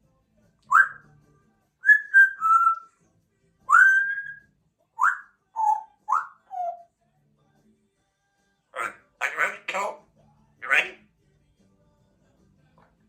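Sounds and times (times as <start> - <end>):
parrot whistling: 0.7 - 1.0, 1.8 - 2.9, 3.7 - 4.4, 5.0 - 6.8.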